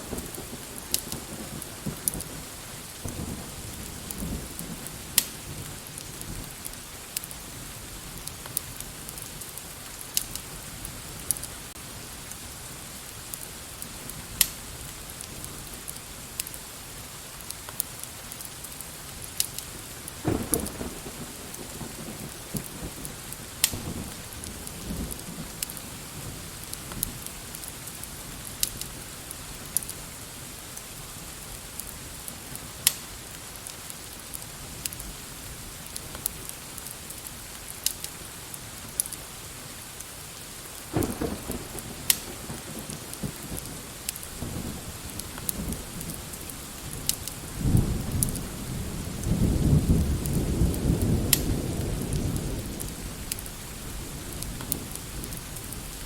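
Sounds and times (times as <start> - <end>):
thunder rumbling: 0.0 - 6.7, 20.2 - 27.6, 40.9 - 56.0
steady rain: 0.0 - 56.0
sharp crackling clicks: 0.8 - 1.2, 5.2 - 5.4, 8.3 - 10.5, 19.3 - 21.7, 28.6 - 28.9, 32.8 - 33.0, 41.0 - 44.3.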